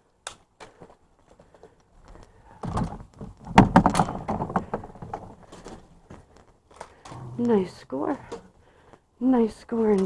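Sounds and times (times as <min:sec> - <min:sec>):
cans knocking and clattering: 0:02.6 - 0:05.4.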